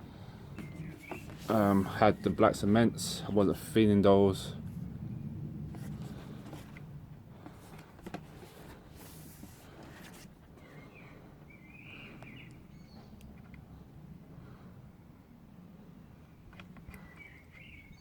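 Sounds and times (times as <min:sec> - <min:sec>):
rustle: 0:05.7 - 0:10.5.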